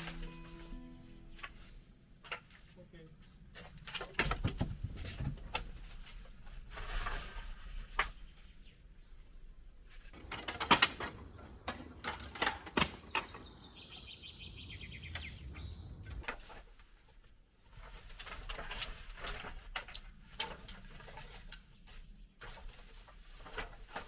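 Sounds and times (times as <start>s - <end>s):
wooden slats knocking and clattering: 3.6s - 6.1s, 10.1s - 13.5s
rapid high bird chirps: 13.3s - 16.1s.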